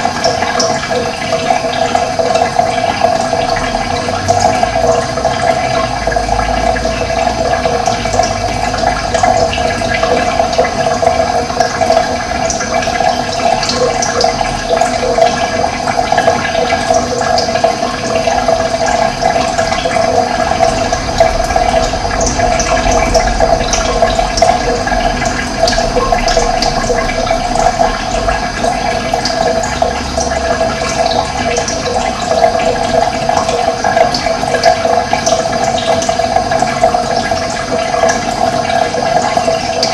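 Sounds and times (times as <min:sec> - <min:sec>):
running water flowing: 0:00.0 - 0:39.9.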